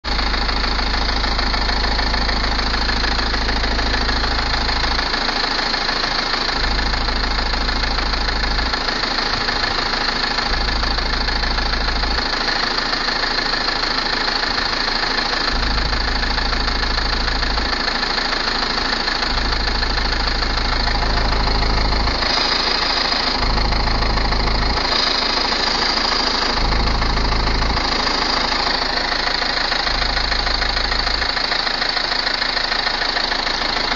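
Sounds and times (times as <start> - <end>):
diesel engine running: 0.0 - 33.9
deep pulsing hum: 14.4 - 18.1, 18.7 - 33.9.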